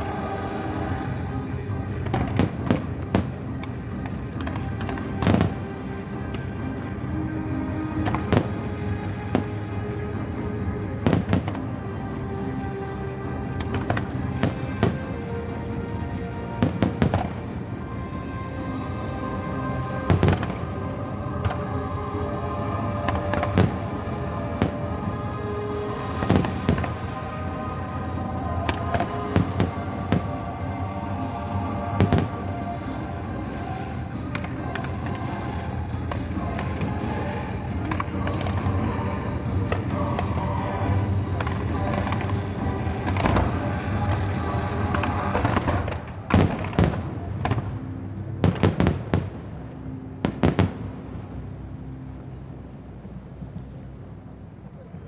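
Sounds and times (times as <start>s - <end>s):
music playing: 0.0s - 55.0s
fireworks bursting in sharp bangs: 1.9s - 6.2s, 11.0s - 11.7s, 13.6s - 15.4s, 16.5s - 17.6s, 20.0s - 20.7s, 23.1s - 25.0s, 25.9s - 27.3s, 31.8s - 32.4s, 34.2s - 47.8s, 48.4s - 49.4s, 50.2s - 51.0s
firework bangs echoing: 13.6s - 15.2s.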